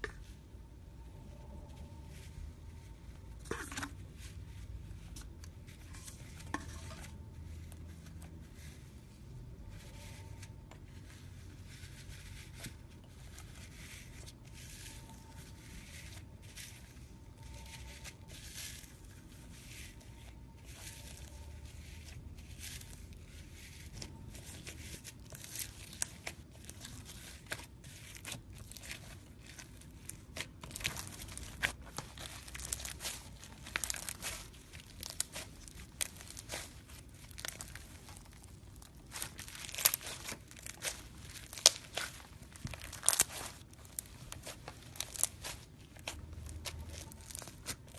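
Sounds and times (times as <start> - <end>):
slime squished by hand crackling: 23.8 - 47.9.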